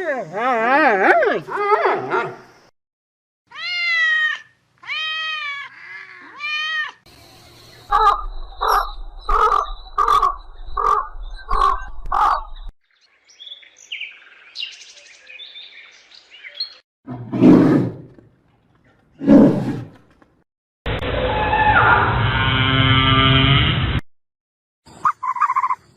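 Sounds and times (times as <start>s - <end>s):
loud animal calls: 7.9s - 12.6s.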